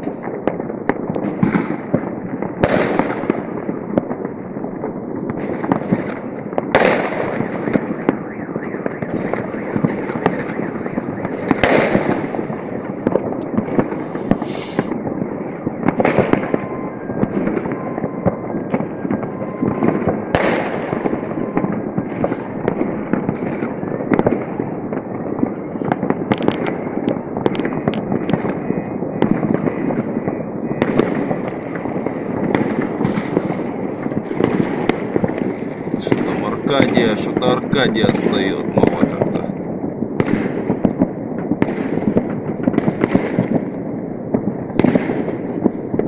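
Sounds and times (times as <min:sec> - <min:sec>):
fireworks crackling: 0:00.0 - 0:46.0
loud fireworks bangs: 0:00.0 - 0:46.0.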